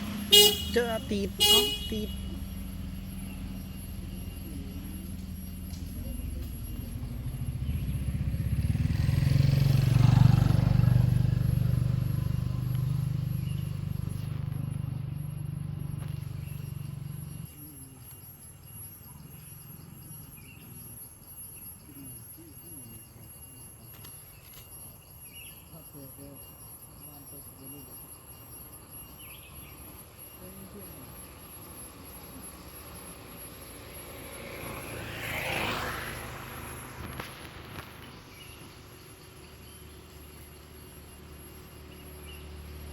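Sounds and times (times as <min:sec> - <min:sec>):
faint bird chirps: 0:00.0 - 0:08.8, 0:11.6 - 0:42.9
vehicle engine running: 0:00.0 - 0:18.2, 0:28.7 - 0:42.9.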